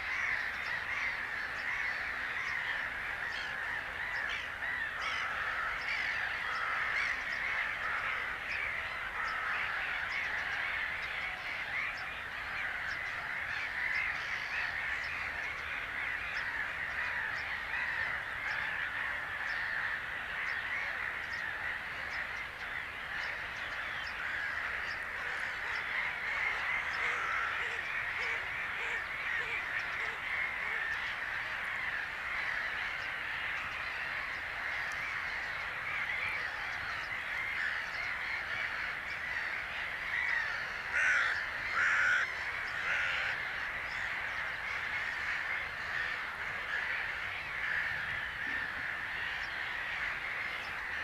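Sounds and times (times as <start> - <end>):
chorus of birds calling: 0.0 - 51.0.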